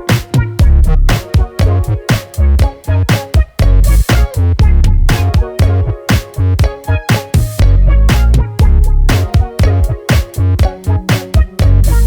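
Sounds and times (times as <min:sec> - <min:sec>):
electronic funk music: 0:00.0 - 0:12.0.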